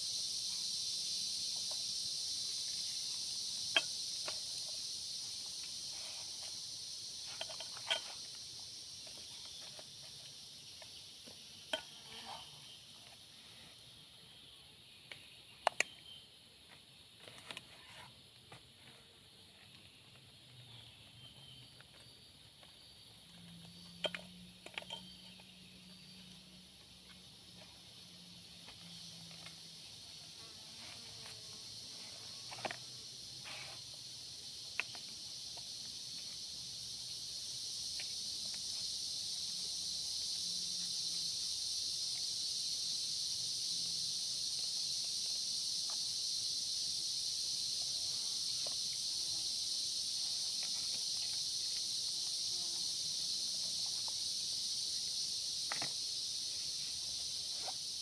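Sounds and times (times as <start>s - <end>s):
insects chorus: 0.0s - 58.0s.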